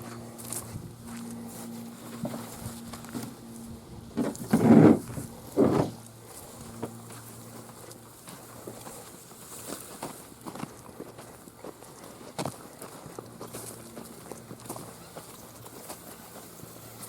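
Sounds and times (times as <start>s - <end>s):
handling noise: 0.0s - 6.1s
footsteps: 0.0s - 17.0s
low steady hum: 0.0s - 17.0s.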